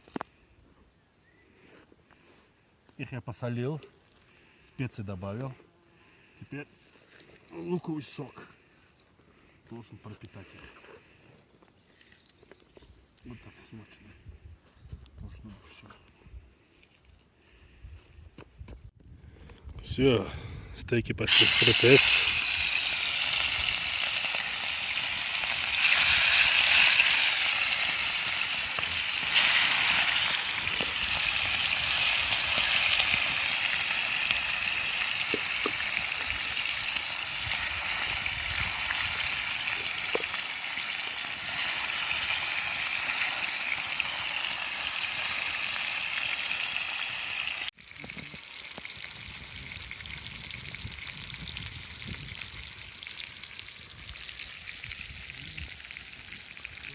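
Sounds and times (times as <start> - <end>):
steaks sizzling in a pan: 21.3 - 47.7.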